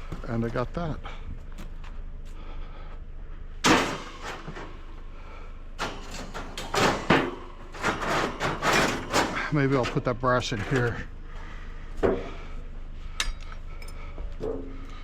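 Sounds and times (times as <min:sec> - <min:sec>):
scrap knocking and clattering: 0:05.8 - 0:10.0.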